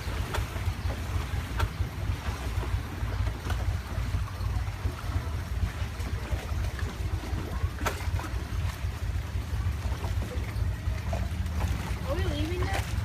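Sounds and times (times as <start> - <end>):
motorboat engine rumbling: 0.0 - 13.0
water rushing: 0.0 - 13.0
wind: 0.0 - 13.0.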